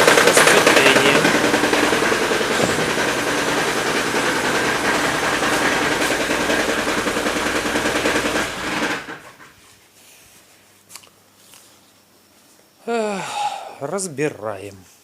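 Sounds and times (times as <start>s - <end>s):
car engine running: 0.0s - 9.2s
rapid engine knocking: 0.0s - 9.5s.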